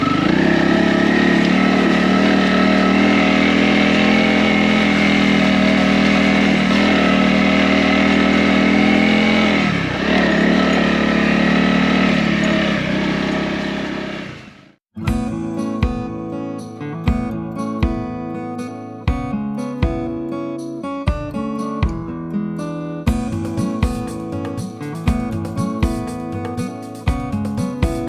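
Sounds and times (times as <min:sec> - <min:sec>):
motorcycle engine running: 0:00.0 - 0:16.1, 0:23.1 - 0:28.0.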